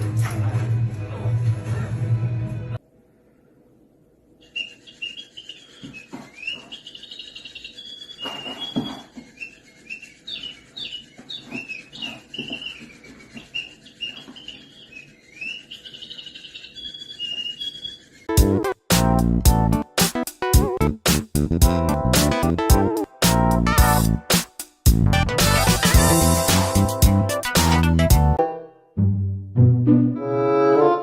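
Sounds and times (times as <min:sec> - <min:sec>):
small bird chirping and twittering: 0:04.4 - 0:18.3.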